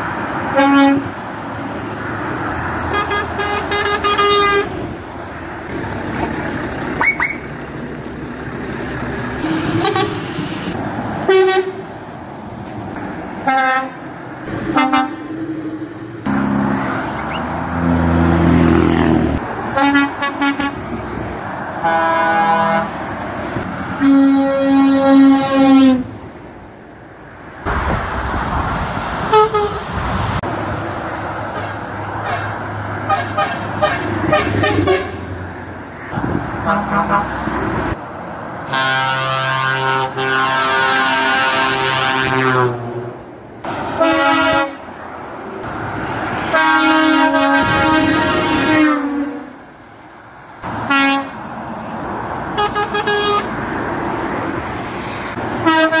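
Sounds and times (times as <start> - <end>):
traffic noise: 0.0 - 56.0
truck horn blasts: 0.5 - 1.2, 2.8 - 4.8, 9.4 - 11.9, 13.4 - 14.0, 14.7 - 15.4, 19.7 - 21.0, 21.8 - 23.0, 24.0 - 26.1, 29.3 - 29.9, 31.5 - 35.3, 36.6 - 37.5, 38.7 - 43.0, 44.0 - 44.9, 46.5 - 49.6, 50.9 - 51.4, 52.6 - 53.6, 55.6 - 56.0.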